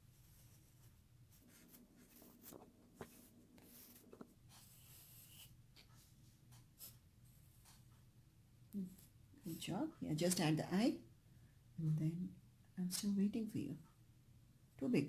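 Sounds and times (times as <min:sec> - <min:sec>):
pencil scratching on paper: 0:00.1 - 0:07.9.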